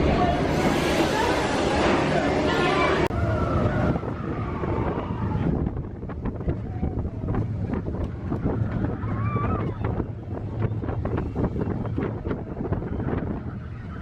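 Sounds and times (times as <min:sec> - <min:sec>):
ride vehicle rumbling: 0:00.0 - 0:14.0
wind buffeting microphone: 0:00.0 - 0:14.0.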